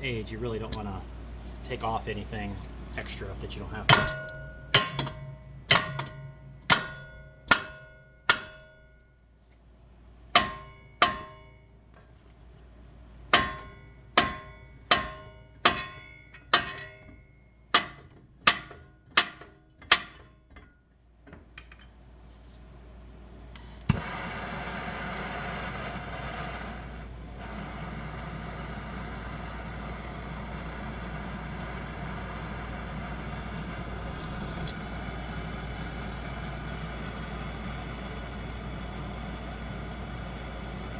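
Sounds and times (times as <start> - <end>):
steady whirring hum: 0.0 - 40.9
hammer striking metal: 3.9 - 9.0, 10.3 - 11.6, 13.3 - 17.1, 17.7 - 20.2.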